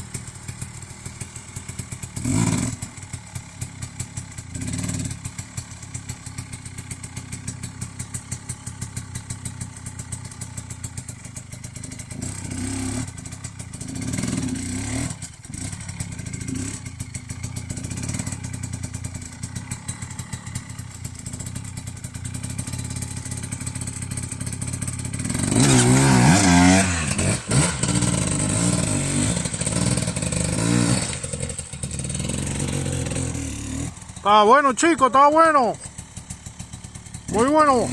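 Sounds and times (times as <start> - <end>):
dirt bike engine revving: 1.4 - 5.6, 11.8 - 18.8, 19.4 - 37.9.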